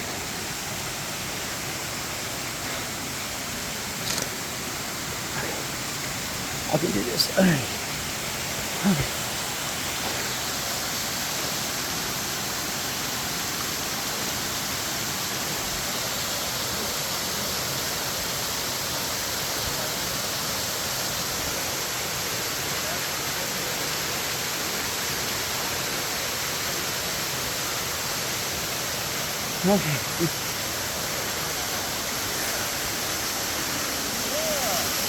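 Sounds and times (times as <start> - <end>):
waterfall roaring: 0.0 - 35.0.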